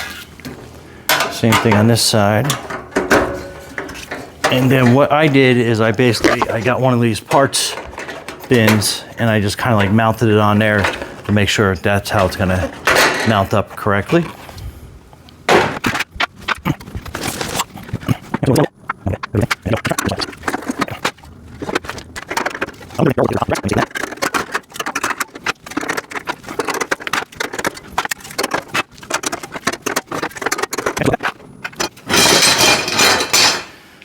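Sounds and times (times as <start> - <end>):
metal rack parts clattering: 1.1 - 14.2, 23.7 - 33.8.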